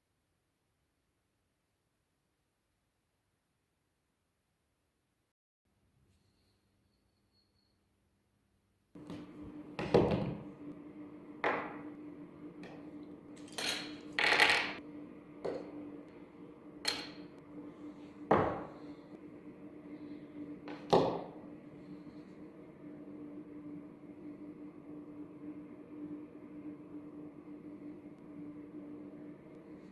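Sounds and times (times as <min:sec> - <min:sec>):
steady low hum: 0:09.0 - 0:29.9.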